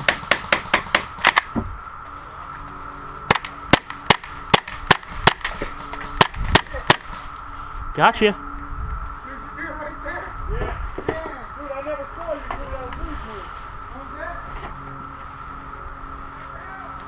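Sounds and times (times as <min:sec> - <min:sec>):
airsoft gun shots: 0:03.3 - 0:07.3.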